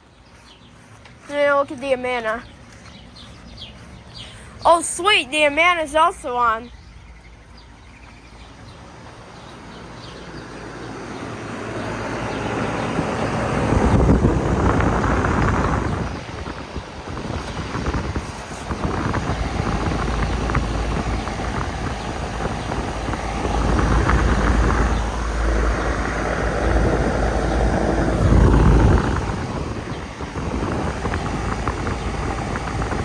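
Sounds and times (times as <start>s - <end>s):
air conditioner unit running: 0.0s - 33.0s
low rumble: 11.7s - 33.0s.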